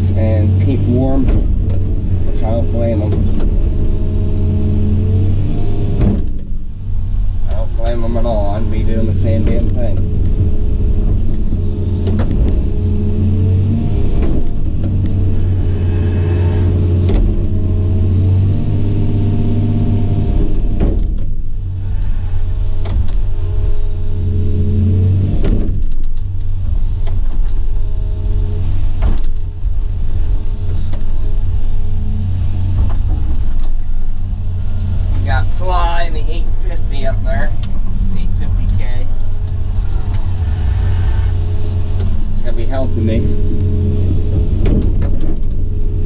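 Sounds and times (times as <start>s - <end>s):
excavator diesel engine: 0.0s - 46.0s.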